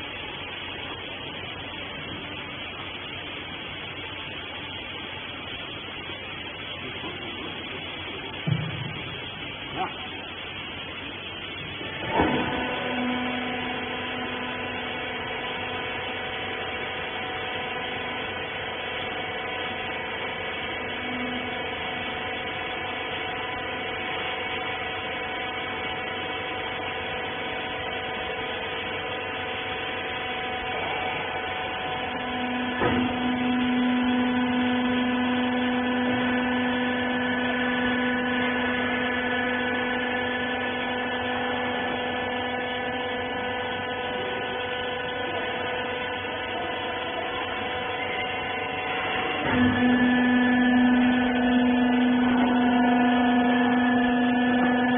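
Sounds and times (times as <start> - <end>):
baler motor and pump hum: 0.0 - 54.9
machine knock: 8.4 - 9.2.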